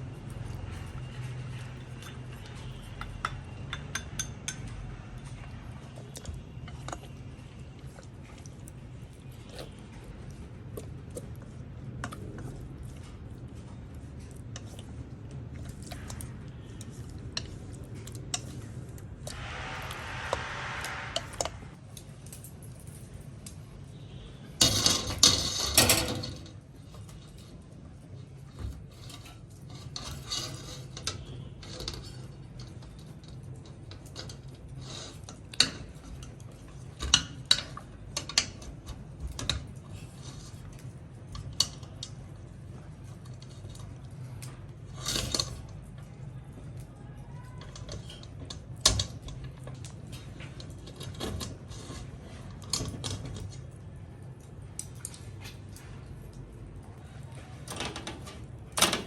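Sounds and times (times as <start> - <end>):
utensils and dishes clinking: 0.2 - 7.5
steady low hum: 19.2 - 21.9.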